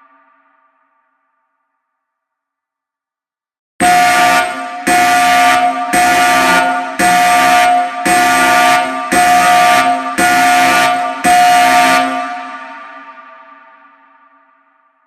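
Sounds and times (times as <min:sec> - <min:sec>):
buzzing alarm horn blasts: 0:03.8 - 0:13.8.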